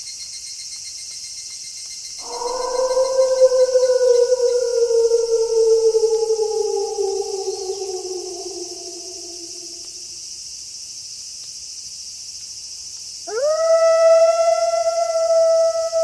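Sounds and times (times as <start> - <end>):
wolf howling: 2.2 - 10.1, 13.3 - 16.0
night insects hissing: 2.2 - 16.0.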